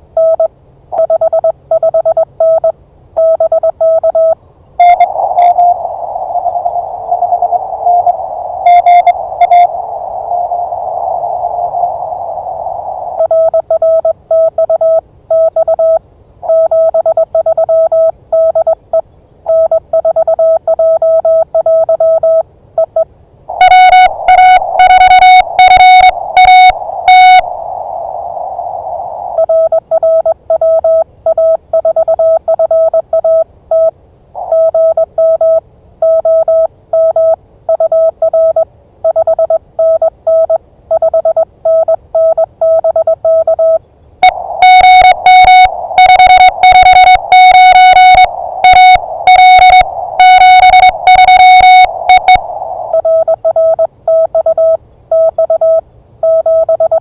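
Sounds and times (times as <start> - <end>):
morse code beeps: 0.2 - 5.8, 7.3 - 9.7, 13.2 - 27.5, 29.4 - 57.0
louder morse signal: 3.4 - 14.8, 23.5 - 38.2, 41.1 - 57.0
radio band hiss: 4.8 - 13.2, 23.5 - 29.7, 44.2 - 53.0.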